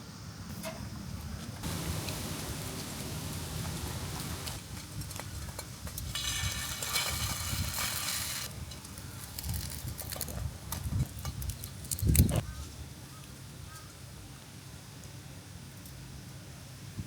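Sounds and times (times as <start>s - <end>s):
food sizzling: 1.6s - 5.0s, 6.0s - 8.5s
light clicks and clinks: 1.6s - 6.1s.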